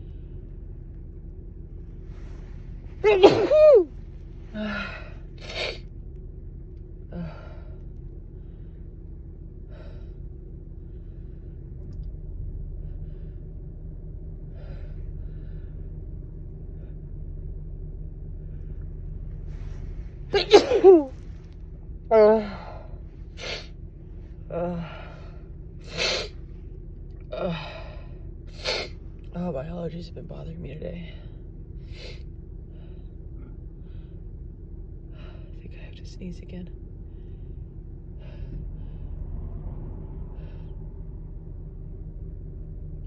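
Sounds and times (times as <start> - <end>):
faint breaths: 0.0 - 3.2, 7.0 - 26.8, 27.4 - 29.3, 31.0 - 36.0, 36.8 - 43.0
woman sneezing: 3.0 - 3.9, 20.4 - 21.1.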